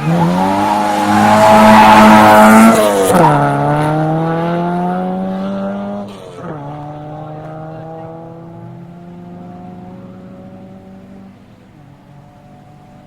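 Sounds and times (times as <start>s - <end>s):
rally car engine revving: 0.0s - 12.8s.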